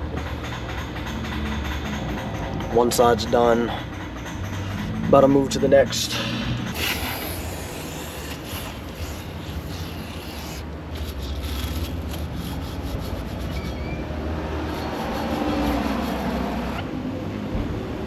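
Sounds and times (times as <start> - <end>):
hand rubbing strokes: 6.7 - 16.8.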